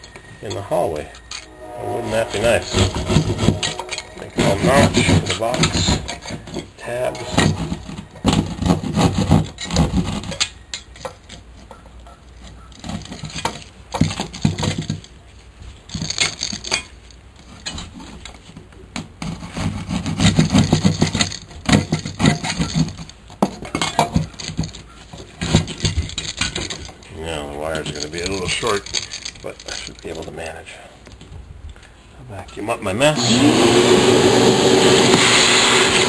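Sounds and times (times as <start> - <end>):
scraping and knocking electrical box: 2.2 - 15.2, 15.9 - 30.2.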